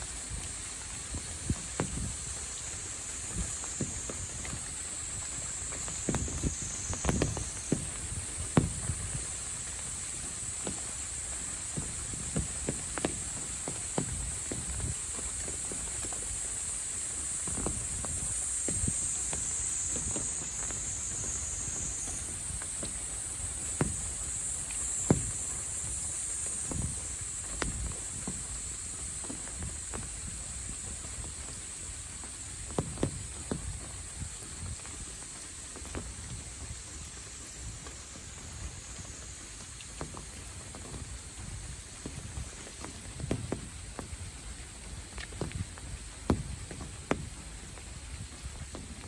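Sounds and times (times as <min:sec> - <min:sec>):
insect chorus buzzing: 0:00.0 - 0:48.8.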